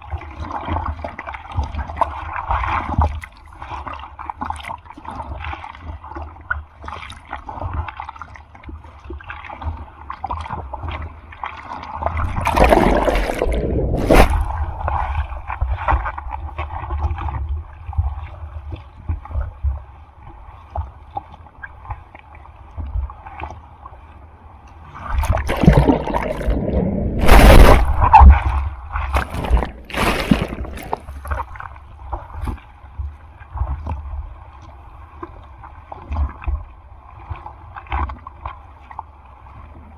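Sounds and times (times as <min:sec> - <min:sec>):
water sloshing and splashing: 0:09.2 - 0:17.3, 0:24.8 - 0:32.6
breaking wave rushes: 0:12.4 - 0:14.6, 0:25.5 - 0:28.4.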